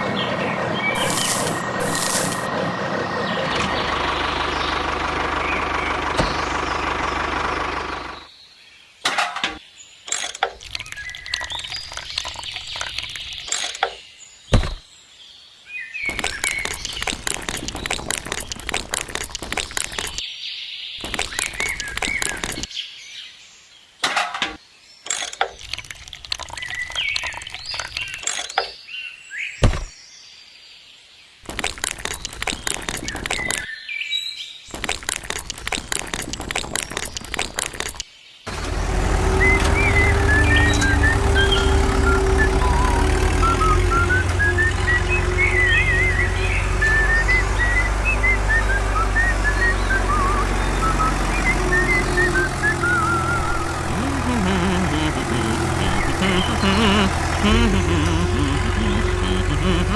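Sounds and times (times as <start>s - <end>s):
small engine running: 0.1s - 8.3s, 38.5s - 59.9s
birds chirping: 39.3s - 59.9s.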